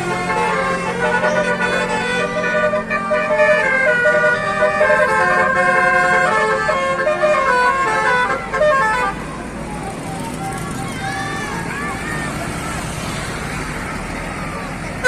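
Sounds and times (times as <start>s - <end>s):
musical air horn playing tune: 0.0s - 9.2s.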